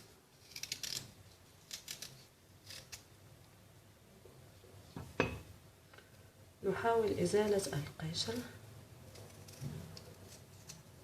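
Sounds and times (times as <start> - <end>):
faint scratchy scrapes on ginger: 9.0 - 11.0.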